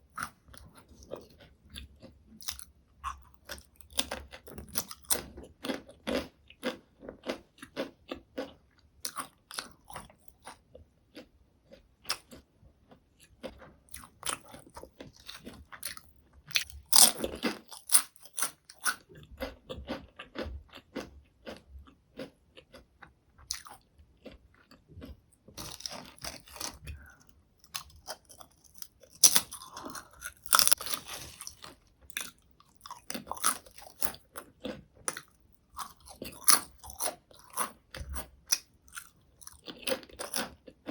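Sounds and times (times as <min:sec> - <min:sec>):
potato chips crunching: 0:13.4 - 0:22.8, 0:23.4 - 0:40.9.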